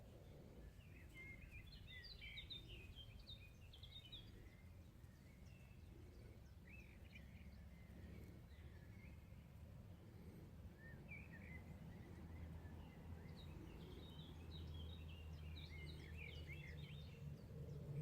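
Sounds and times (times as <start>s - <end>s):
small birds twittering: 0.0s - 18.0s
low steady rumble: 3.6s - 18.0s.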